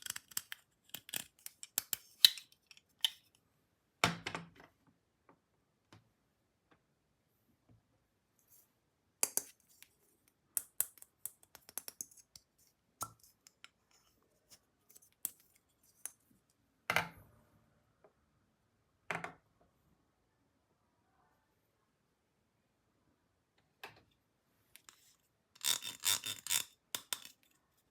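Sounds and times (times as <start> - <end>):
plastic toy pieces clicking: 25.6 - 27.4.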